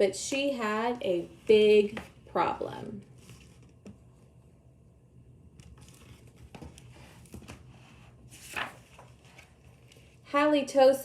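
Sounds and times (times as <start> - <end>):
paper pages rustling: 3.1 - 4.0, 5.6 - 10.2.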